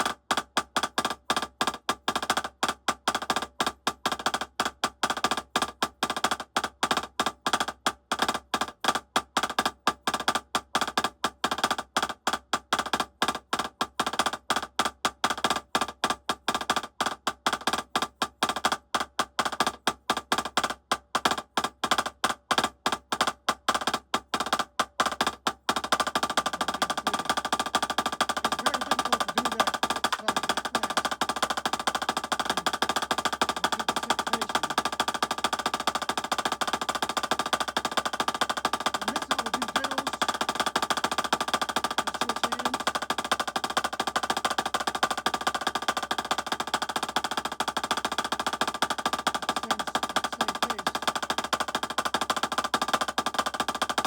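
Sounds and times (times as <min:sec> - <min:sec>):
drumsticks playing rolls: 0:22.9 - 0:54.0.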